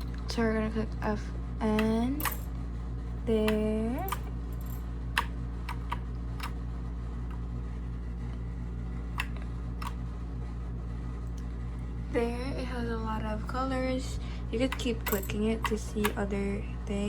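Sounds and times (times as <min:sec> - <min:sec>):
steady low hum: 0:00.0 - 0:17.0
mechanical keyboard clicks: 0:05.2 - 0:06.6, 0:14.6 - 0:16.2.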